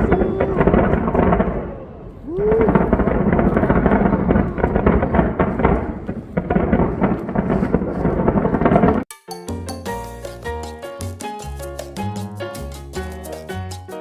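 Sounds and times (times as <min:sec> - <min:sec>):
low rumble: 0:00.0 - 0:09.0
fireworks booming and crackling: 0:00.0 - 0:09.1.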